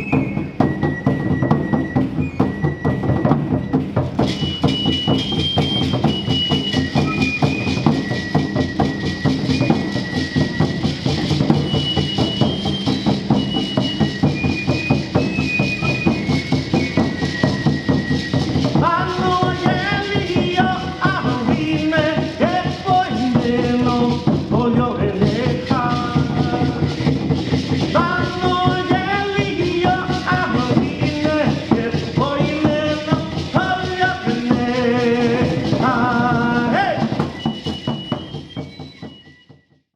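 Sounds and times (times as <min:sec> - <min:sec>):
high flute melody: 0:00.0 - 0:24.5, 0:25.6 - 0:39.9
fast drumming: 0:00.0 - 0:39.6
voices chanting: 0:27.9 - 0:37.5.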